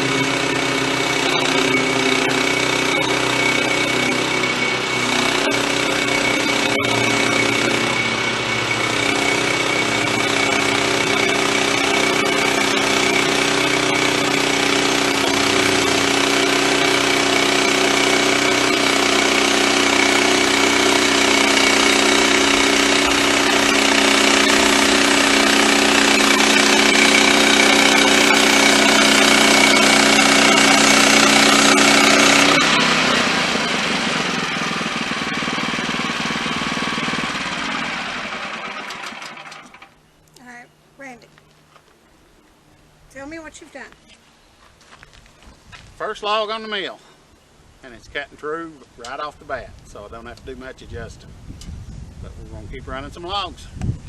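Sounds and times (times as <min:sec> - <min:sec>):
band blade sawing through log: 0:00.0 - 0:39.8
sawmill engine running: 0:00.0 - 0:41.4.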